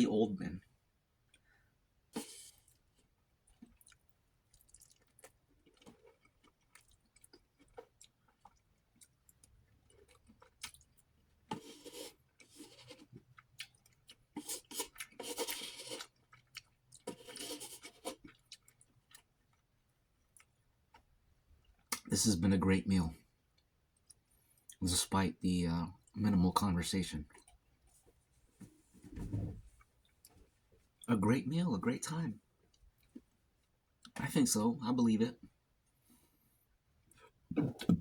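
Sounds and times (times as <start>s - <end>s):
person chewing food: 2.1s - 22.1s, 27.3s - 27.9s, 37.1s - 38.0s.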